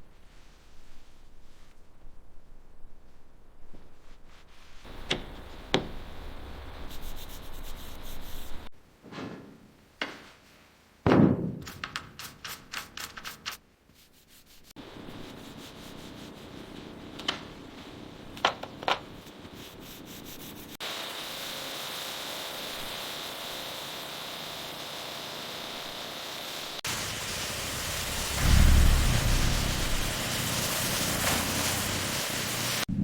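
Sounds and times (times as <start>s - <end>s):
sanding strokes on a car: 4.3s - 8.7s, 14.0s - 16.9s, 19.3s - 20.8s.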